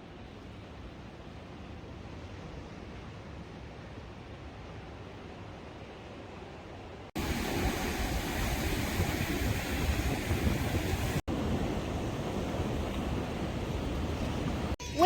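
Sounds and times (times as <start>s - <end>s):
rushing wind: 0.0s - 14.8s
sea noise: 0.0s - 15.0s
wind buffeting microphone: 7.2s - 14.8s.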